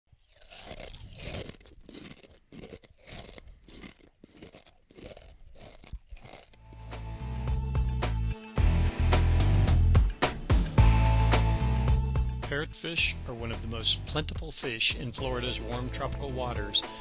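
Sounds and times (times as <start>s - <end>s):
fish crunching coral underwater: 0.1s - 6.8s
music: 6.6s - 17.0s.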